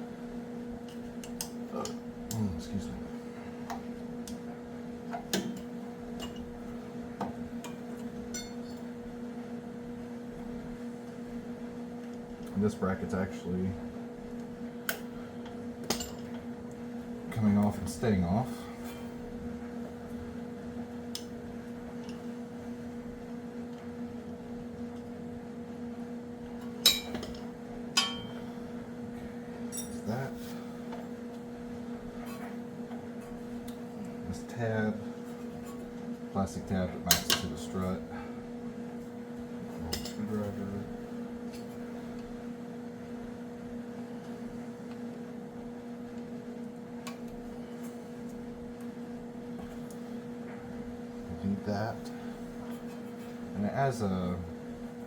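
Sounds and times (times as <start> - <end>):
steady hum: 0.0 - 55.0.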